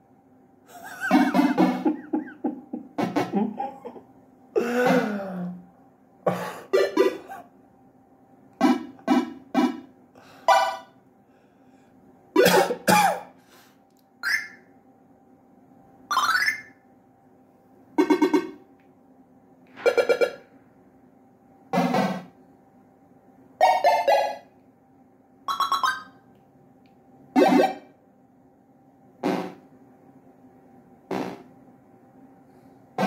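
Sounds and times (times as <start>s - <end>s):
faint steady hum: 0.0s - 33.0s
short electronic tones: 16.1s - 16.7s, 19.8s - 20.5s, 25.5s - 26.2s.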